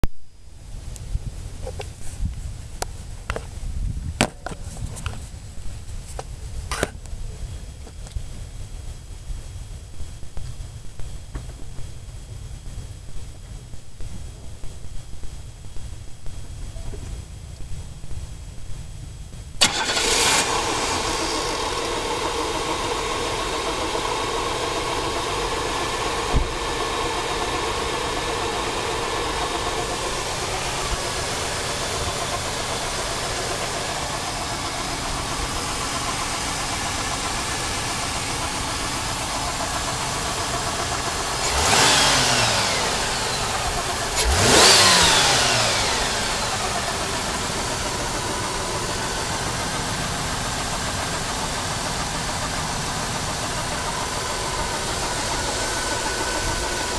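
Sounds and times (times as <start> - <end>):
car engine starting and idling: 15.5 - 56.9
car engine revving: 19.6 - 56.9.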